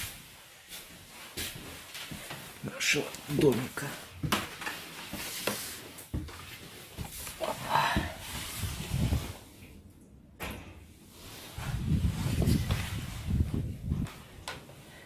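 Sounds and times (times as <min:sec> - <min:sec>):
footsteps climbing stairs: 0:00.0 - 0:08.5.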